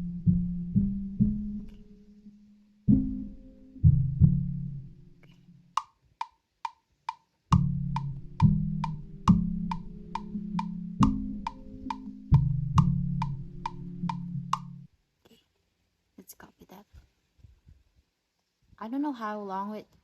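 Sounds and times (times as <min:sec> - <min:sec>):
low sustained instrument notes: 0:00.0 - 0:05.8, 0:07.5 - 0:14.9
metronome clicking: 0:05.2 - 0:14.9.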